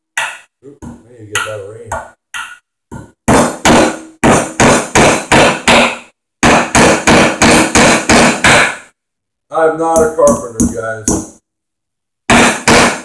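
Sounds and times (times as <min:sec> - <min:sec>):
hammer driving nail into wood: 0:00.2 - 0:00.5, 0:01.4 - 0:08.9, 0:12.3 - 0:13.0.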